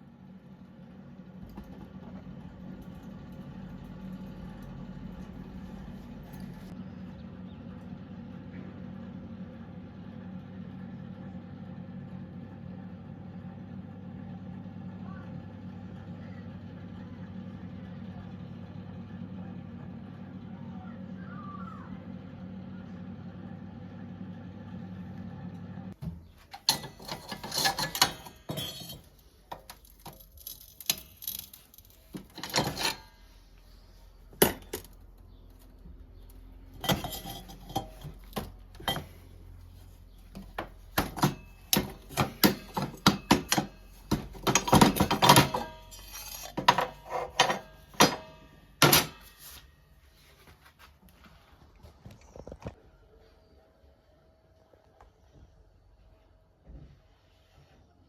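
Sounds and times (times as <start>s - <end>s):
low machine hum: 0.0s - 50.4s
metal clanks and clattering: 26.5s - 33.2s, 36.8s - 39.3s, 40.4s - 49.5s.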